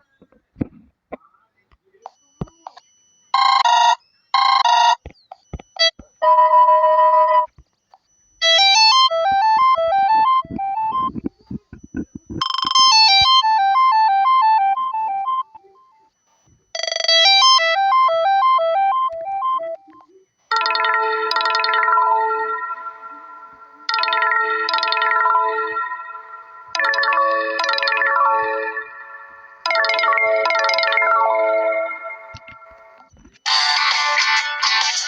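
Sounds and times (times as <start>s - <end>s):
ringtone of sustained chords: 8.4s - 11.3s, 12.4s - 16.1s, 17.0s - 35.0s
synthesized ringtone melody: 8.4s - 16.1s, 16.8s - 35.0s.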